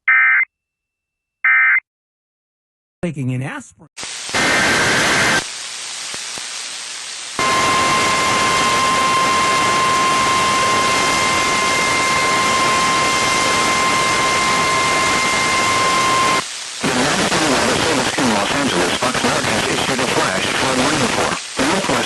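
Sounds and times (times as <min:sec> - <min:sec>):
radio static hiss: 0:04.0 - 0:22.0
steady warning alarm tone: 0:07.4 - 0:16.4.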